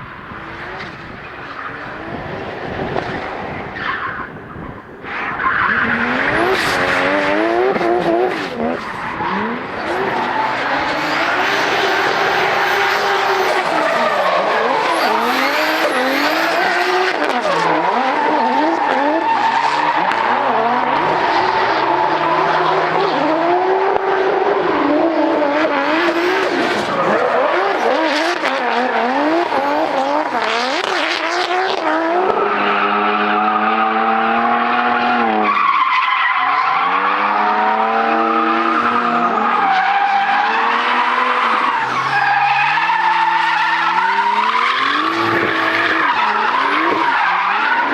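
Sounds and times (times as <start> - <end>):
car engines revving hard: 0.0 - 47.9
tyre squeal: 5.1 - 20.0, 35.4 - 47.9.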